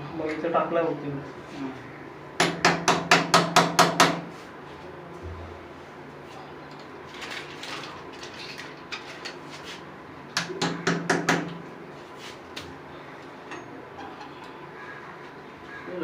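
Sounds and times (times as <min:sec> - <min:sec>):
loud sharp knocks: 0:02.4 - 0:04.3, 0:10.4 - 0:11.6.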